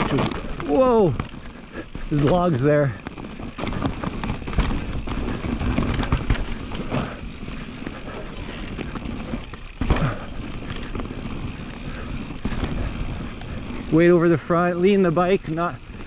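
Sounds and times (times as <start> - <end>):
bike tyres rumbling on trail: 0.0 - 16.0
bike knocks and thumps: 2.2 - 7.3, 8.0 - 10.9.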